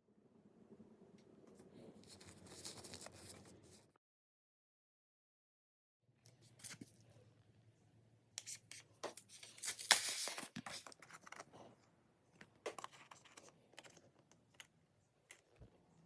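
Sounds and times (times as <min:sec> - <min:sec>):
materials scratching and rustling: 0:02.0 - 0:03.9.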